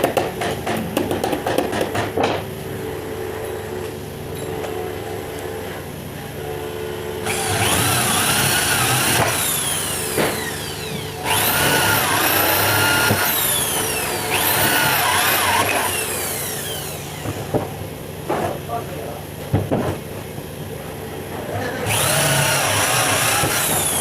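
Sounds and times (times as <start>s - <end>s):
power tool motor whining: 7.2s - 17.5s, 21.8s - 24.0s.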